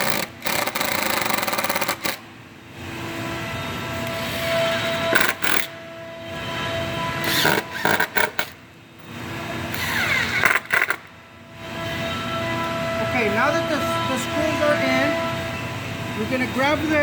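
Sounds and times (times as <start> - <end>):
power driver driving screws: 0.0 - 2.2, 5.1 - 5.7, 7.2 - 8.6, 9.7 - 11.1.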